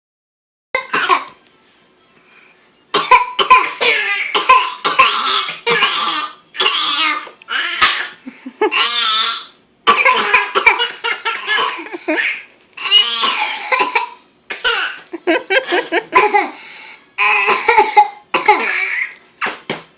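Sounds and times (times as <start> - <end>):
girl fake coughing: 16.2 - 16.6, 17.2 - 18.9.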